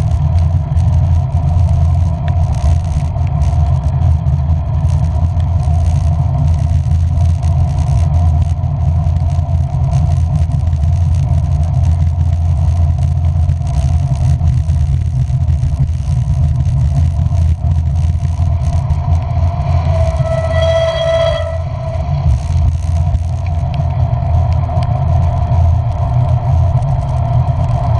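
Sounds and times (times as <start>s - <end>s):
road vehicle rumble: 0.0s - 27.9s
brief pitched tone: 19.9s - 22.1s.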